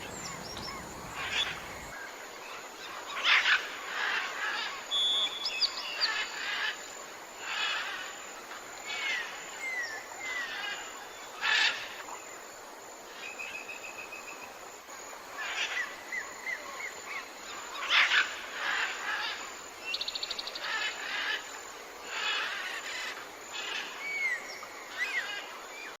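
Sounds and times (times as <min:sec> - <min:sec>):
birds chirping and whistling: 0:00.0 - 0:01.9
fast bird trill: 0:00.0 - 0:01.9
held bird whistle: 0:00.0 - 0:01.9.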